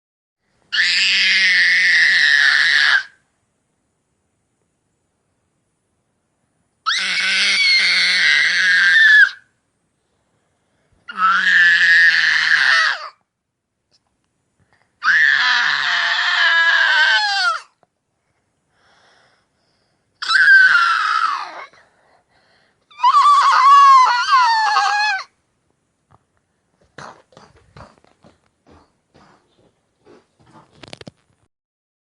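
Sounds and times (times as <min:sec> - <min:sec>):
child screeching roars: 0:00.7 - 0:03.1, 0:06.9 - 0:09.4, 0:11.1 - 0:13.2, 0:15.0 - 0:17.7, 0:20.2 - 0:21.8, 0:22.9 - 0:25.3.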